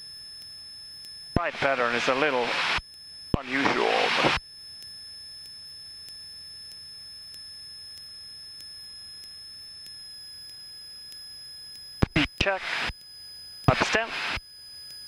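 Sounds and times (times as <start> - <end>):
high-pitched electrical tone: 0.1 - 15.0.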